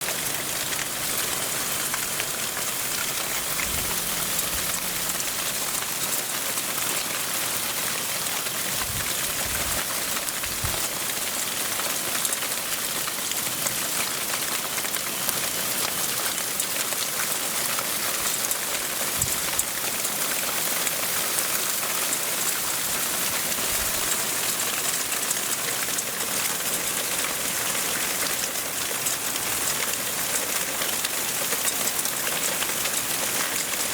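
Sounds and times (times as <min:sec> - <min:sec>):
hail striking surfaces: 0:00.0 - 0:33.9
low thumps: 0:03.3 - 0:05.8.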